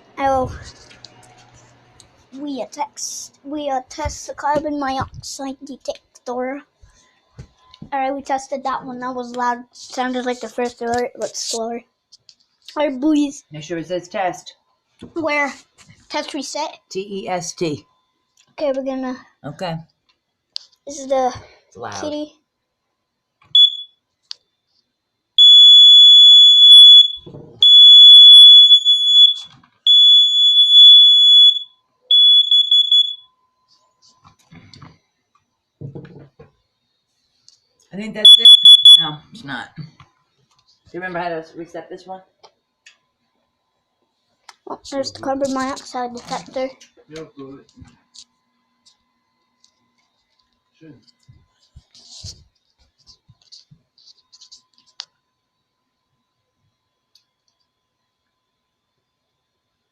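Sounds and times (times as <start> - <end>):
alarm horn beeping: 23.6 - 23.9, 25.4 - 33.3, 38.2 - 39.2.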